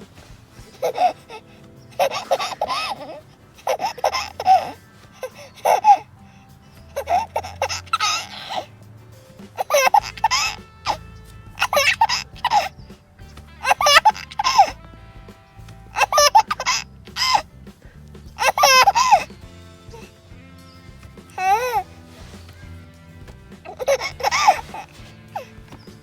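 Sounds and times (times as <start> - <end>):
infant giggling: 0.0 - 8.8, 9.4 - 12.8, 13.6 - 14.9, 15.9 - 17.5, 18.3 - 20.1, 21.2 - 22.7, 23.6 - 26.0.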